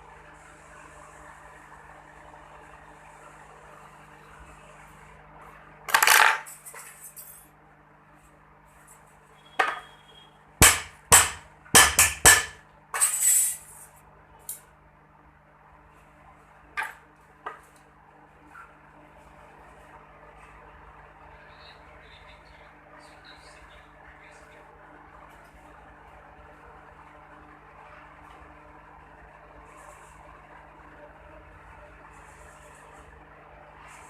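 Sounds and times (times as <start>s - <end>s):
scrape on work surface: 13.0s - 13.9s.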